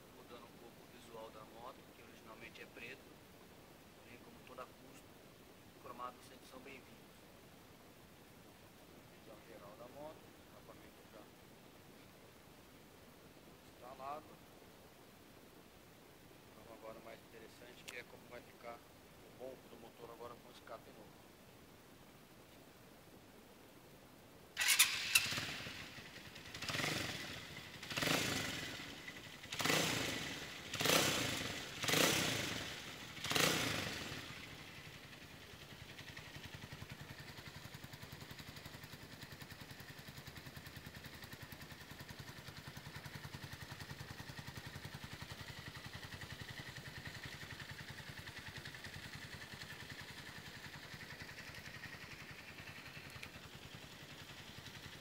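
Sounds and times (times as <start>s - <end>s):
motorcycle engine revving and idling: 24.6s - 55.0s.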